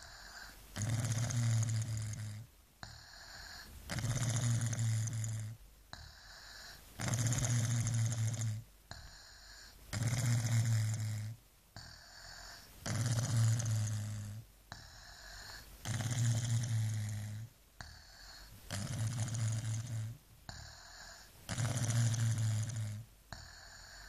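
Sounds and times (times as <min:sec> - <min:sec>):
baby snoring: 0:00.0 - 0:24.0
quiet breath: 0:00.0 - 0:24.0.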